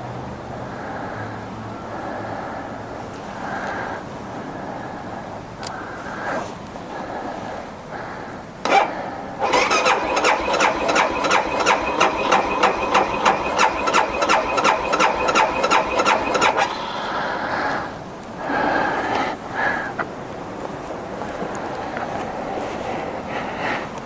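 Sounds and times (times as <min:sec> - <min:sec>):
engine cranking by starter: 0:08.6 - 0:17.2.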